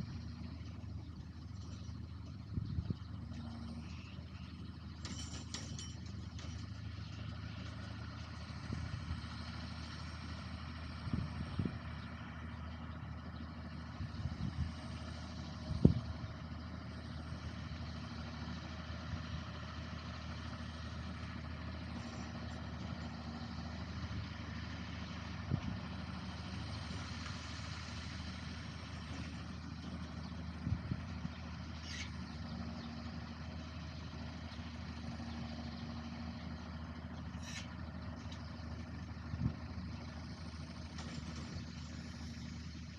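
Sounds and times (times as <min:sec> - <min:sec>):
farm machine engine running: 0:00.0 - 0:42.9
short clunks: 0:04.5 - 0:07.8, 0:40.8 - 0:41.8.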